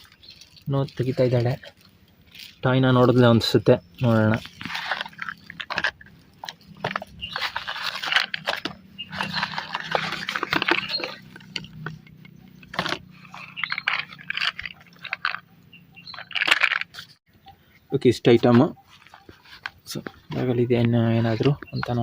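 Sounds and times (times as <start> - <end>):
packaging rustling and crinkling: 4.0 - 15.4.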